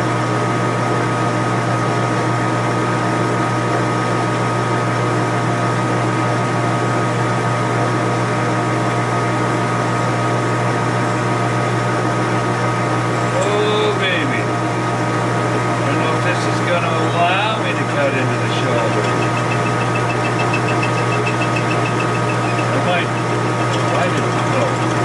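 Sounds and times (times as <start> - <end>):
metal lathe running: 14.8 - 25.0.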